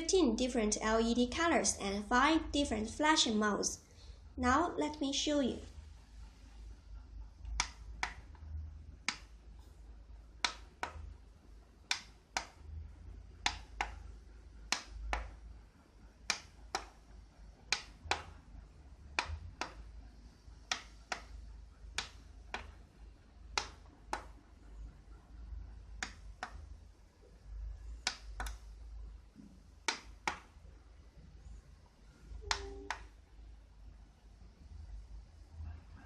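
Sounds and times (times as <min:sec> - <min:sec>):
remote button clicks: 0:32.4 - 0:33.1.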